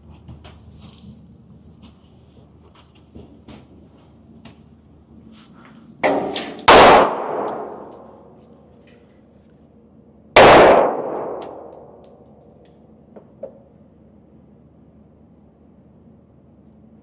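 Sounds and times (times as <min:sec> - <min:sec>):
handgun shots echoing: 0:06.0 - 0:08.1, 0:10.4 - 0:12.1
quieter bang: 0:10.4 - 0:12.0.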